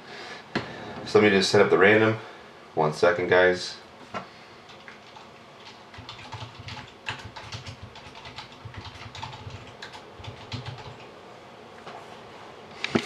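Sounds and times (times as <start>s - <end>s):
typing on computer keyboard: 4.7s - 11.1s.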